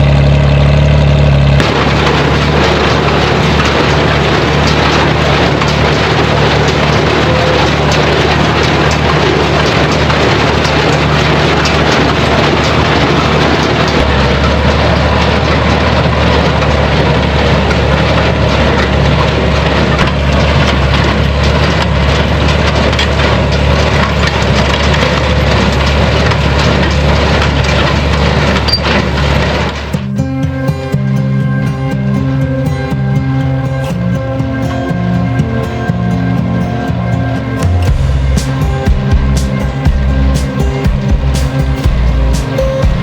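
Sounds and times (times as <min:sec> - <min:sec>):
tractor engine hum: 0:00.0 - 0:43.0
baler crunching hay: 0:01.5 - 0:30.0, 0:36.7 - 0:43.0
music: 0:02.9 - 0:14.3, 0:30.0 - 0:43.0.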